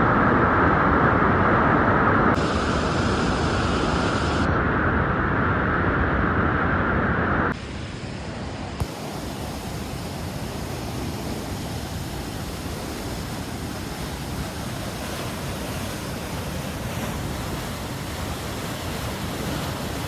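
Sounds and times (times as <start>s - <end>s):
floodwater rushing in creek: 8.8s - 20.0s.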